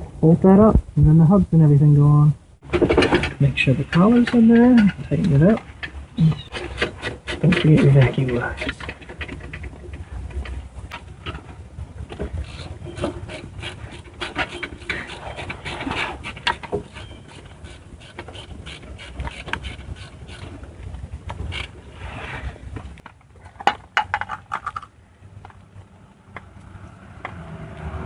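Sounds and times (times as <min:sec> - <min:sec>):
metal parts scraping and knocking: 0:02.7 - 0:10.6, 0:12.1 - 0:21.8, 0:22.8 - 0:24.9.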